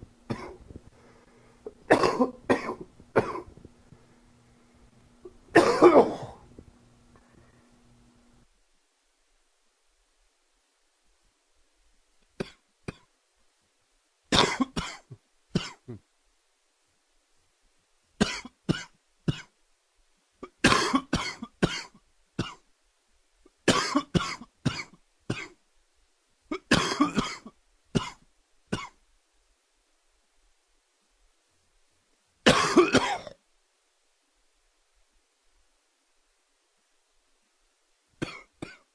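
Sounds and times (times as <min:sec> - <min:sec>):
man coughing: 0:00.3 - 0:00.6, 0:01.9 - 0:03.5, 0:05.6 - 0:06.4, 0:14.4 - 0:16.0, 0:20.4 - 0:22.6, 0:23.7 - 0:25.5, 0:26.5 - 0:28.2, 0:32.5 - 0:33.4, 0:38.2 - 0:38.9.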